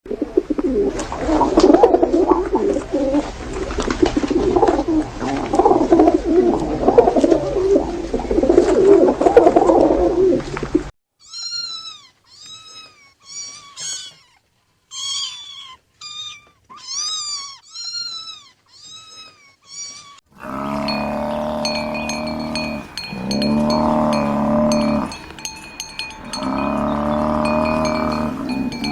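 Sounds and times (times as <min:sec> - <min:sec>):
cat meowing: 0:11.2 - 0:20.2.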